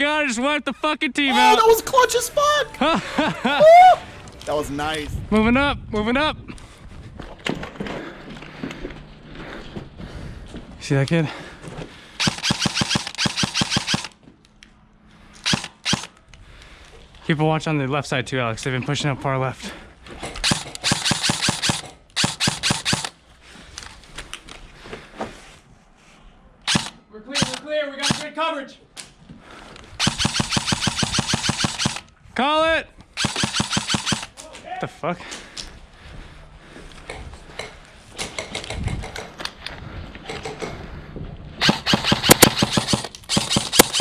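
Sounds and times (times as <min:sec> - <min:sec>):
airsoft guns firing: 0:12.2 - 0:14.2, 0:15.4 - 0:16.1, 0:20.4 - 0:23.2, 0:26.7 - 0:28.3, 0:30.0 - 0:32.0, 0:33.2 - 0:34.4, 0:41.6 - 0:44.0.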